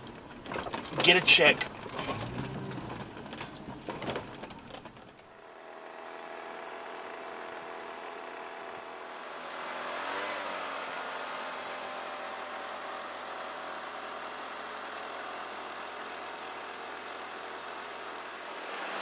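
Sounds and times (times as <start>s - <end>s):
knocks and handling noises: 0.0s - 5.2s
vehicle engine and road noise: 0.0s - 19.0s.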